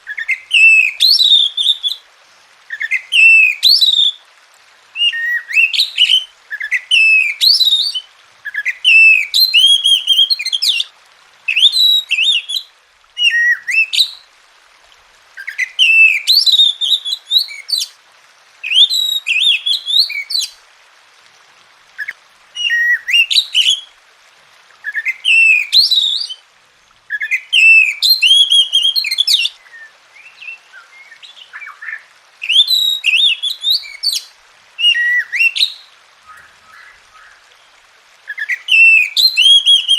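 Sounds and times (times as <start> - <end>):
songbird singing whistled phrases: 0.1 - 2.0, 2.7 - 4.2, 5.0 - 10.9, 11.5 - 14.2, 15.4 - 17.9, 18.6 - 20.6, 22.0 - 23.9, 24.8 - 26.4, 27.1 - 37.4, 38.3 - 39.9.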